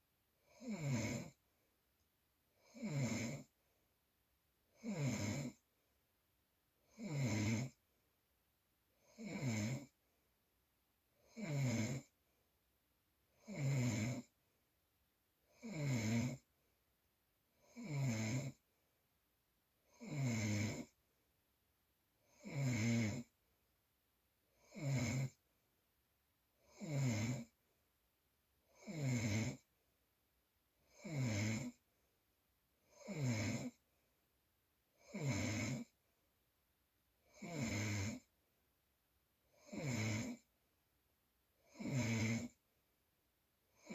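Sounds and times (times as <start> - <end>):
loud snoring: 0.5 - 1.4, 2.6 - 3.5, 4.8 - 5.6, 6.9 - 7.8, 9.0 - 10.0, 11.3 - 12.1, 13.4 - 14.3, 15.5 - 16.5, 17.6 - 18.6, 19.9 - 21.0, 22.3 - 23.3, 24.6 - 25.4, 26.6 - 27.6, 28.8 - 29.7, 30.9 - 31.8, 32.9 - 33.8, 35.0 - 36.0, 37.3 - 38.3, 39.6 - 40.5, 41.7 - 42.6.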